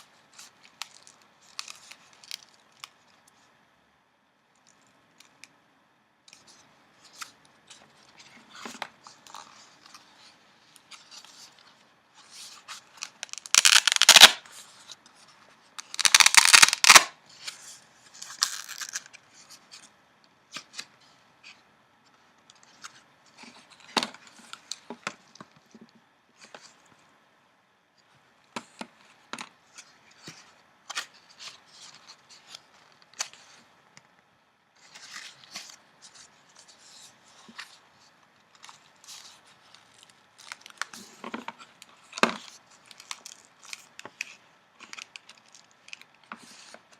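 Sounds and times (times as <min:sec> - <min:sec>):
paper crinkling: 0:06.4 - 0:19.9, 0:34.8 - 0:46.8.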